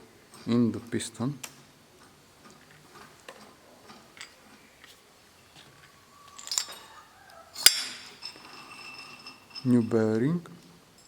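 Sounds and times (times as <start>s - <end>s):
metal engine parts clinking: 2.5s - 10.3s
sharp ringing metallic clink: 7.6s - 10.0s.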